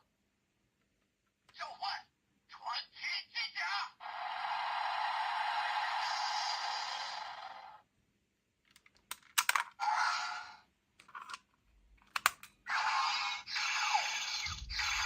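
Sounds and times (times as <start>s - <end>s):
electronic toy sound effects: 4.0s - 7.8s, 9.8s - 10.6s, 12.7s - 15.0s
sharp plastic clicks: 11.2s - 12.6s.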